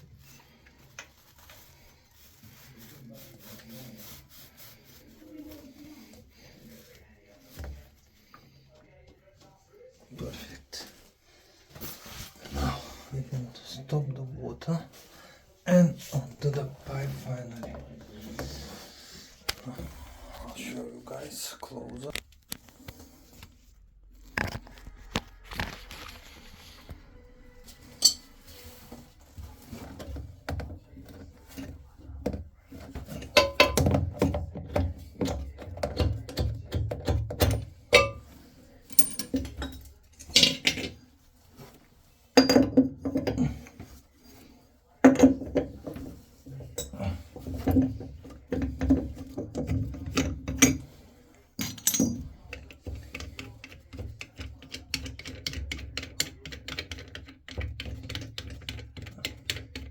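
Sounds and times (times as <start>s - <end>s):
metal scraping on pipework: 27.6s - 30.2s
metallic clinks and knocks: 51.6s - 52.3s.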